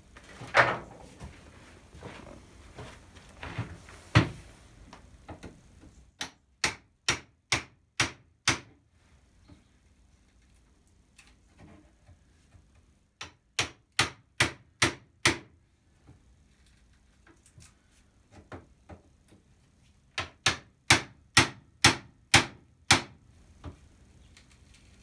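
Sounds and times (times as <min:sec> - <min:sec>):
hammer striking chisel into wood: 0:06.2 - 0:08.7, 0:13.2 - 0:15.5, 0:20.2 - 0:23.2.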